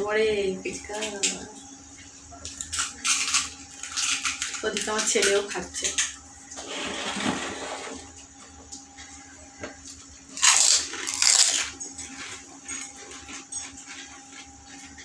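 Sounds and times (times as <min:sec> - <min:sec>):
crunchy shells being chewed: 0:02.4 - 0:06.2, 0:09.8 - 0:15.0.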